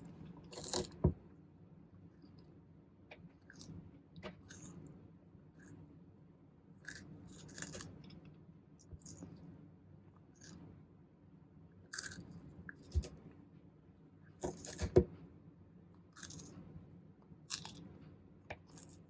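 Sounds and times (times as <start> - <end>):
tortoise crunching food: 0.0 - 1.0, 3.4 - 3.8, 6.8 - 8.2, 10.4 - 10.6, 11.9 - 13.2, 16.1 - 16.6, 17.4 - 17.9, 18.6 - 19.0
faint low hum: 0.0 - 19.0.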